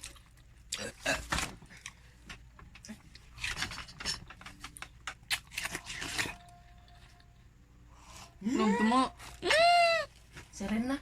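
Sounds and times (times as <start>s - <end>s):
watermelon rasping and crunching: 4.6s - 7.2s
faint steady tone: 5.8s - 10.2s.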